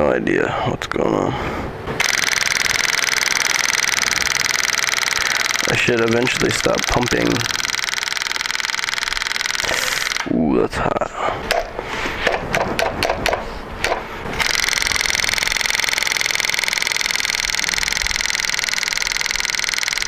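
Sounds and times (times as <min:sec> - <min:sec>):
electric fuel pump buzzing tick: 0:01.9 - 0:10.3, 0:12.8 - 0:20.0
sharp knocks and clicks: 0:11.5 - 0:20.0.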